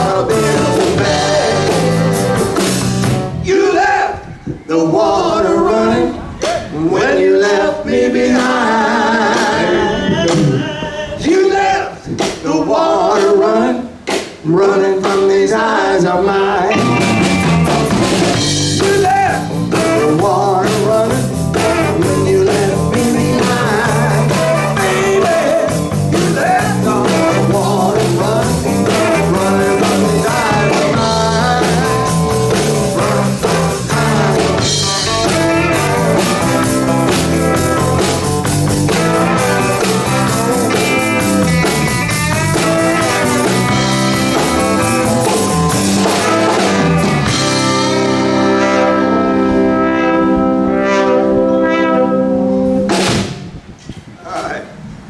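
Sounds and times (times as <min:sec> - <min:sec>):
live band playing blues: 0:00.0 - 0:03.5, 0:08.2 - 0:11.2, 0:16.6 - 0:53.6.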